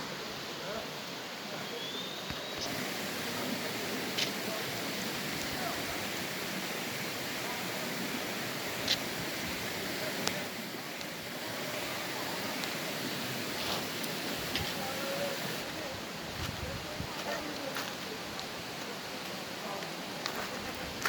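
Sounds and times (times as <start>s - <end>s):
creek water rushing: 0.0s - 21.0s.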